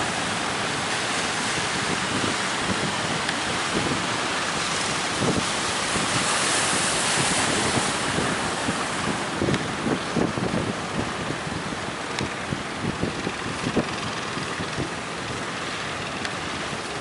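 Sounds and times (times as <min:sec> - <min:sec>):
hissing surge of water: 0:00.0 - 0:10.3
sea waves rushing: 0:00.0 - 0:17.0
wind buffeting microphone: 0:00.0 - 0:17.0.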